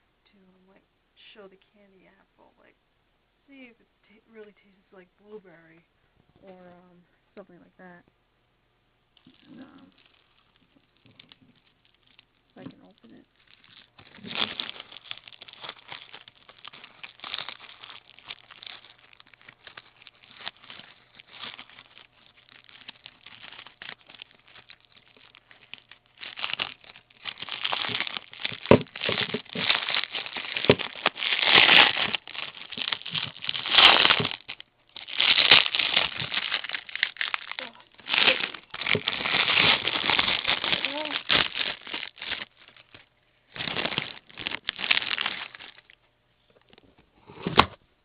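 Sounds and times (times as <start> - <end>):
plastic wrapper crackling: 9.2 - 46.9.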